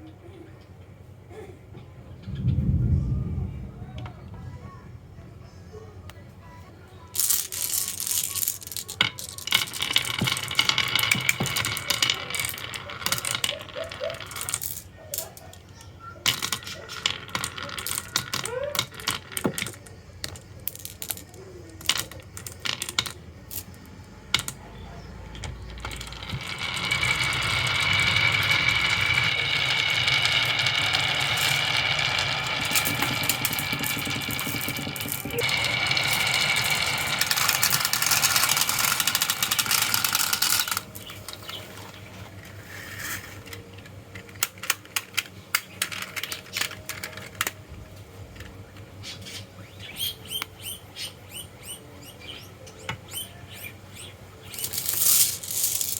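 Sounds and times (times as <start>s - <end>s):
marbles rolling down wooden track: 7.1s - 47.6s, 53.0s - 55.9s
marbles clicking on track: 7.2s - 47.6s, 52.9s - 55.9s.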